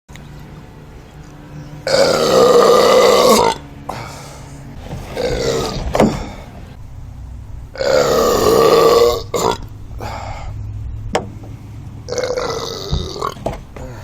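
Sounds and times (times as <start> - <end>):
man belching: 1.9 - 3.6, 7.7 - 10.5, 12.1 - 13.4.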